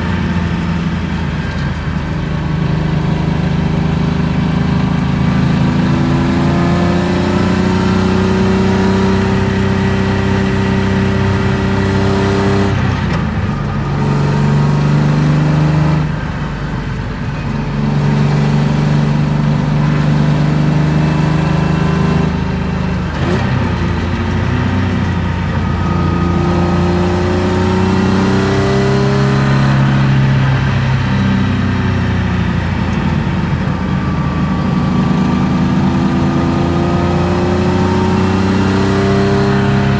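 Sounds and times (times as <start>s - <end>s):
car engine revving under load: 0.0s - 39.9s.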